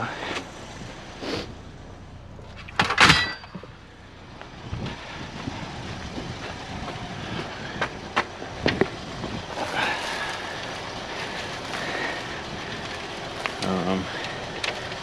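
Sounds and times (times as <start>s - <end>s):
loud metallic clang: 2.6s - 3.8s.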